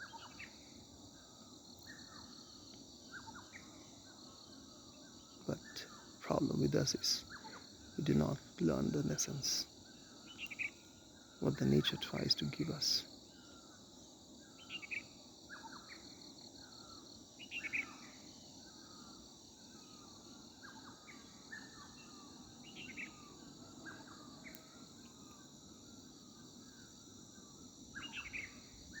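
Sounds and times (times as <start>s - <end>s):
insects droning: 0.0s - 29.0s
bird chirps: 5.1s - 10.8s, 19.8s - 24.8s.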